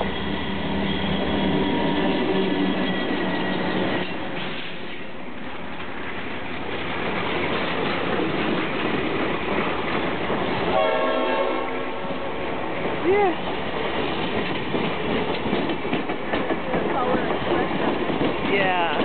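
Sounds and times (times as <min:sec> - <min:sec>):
train rumbling on rails: 0:00.0 - 0:19.0
train horn blast: 0:10.6 - 0:12.6.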